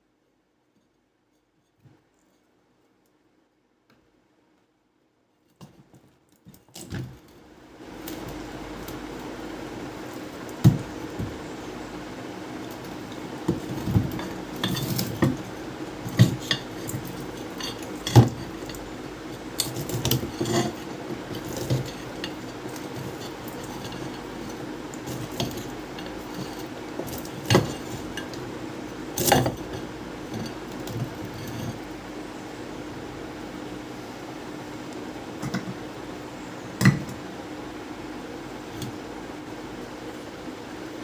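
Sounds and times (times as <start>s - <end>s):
ceiling fan humming: 0.0s - 41.0s.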